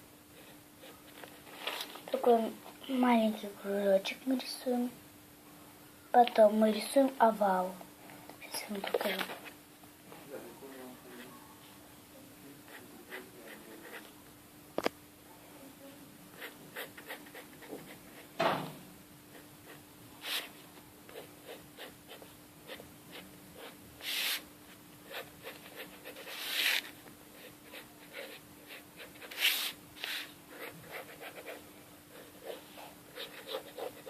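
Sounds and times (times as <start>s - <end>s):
pencil scratching on paper: 12.7s - 14.1s, 16.4s - 18.3s, 19.3s - 24.4s, 25.0s - 34.0s.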